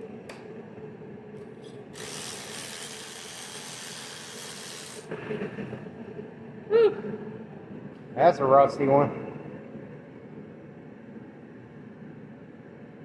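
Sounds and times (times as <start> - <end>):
ratchet wrench clicking: 2.0 - 5.1.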